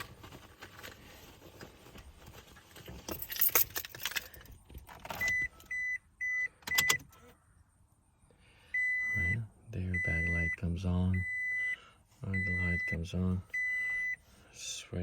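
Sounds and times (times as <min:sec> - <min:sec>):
keys jangling and clicking: 0:02.7 - 0:05.2
car warning chime beeps: 0:05.1 - 0:07.3, 0:08.7 - 0:14.3.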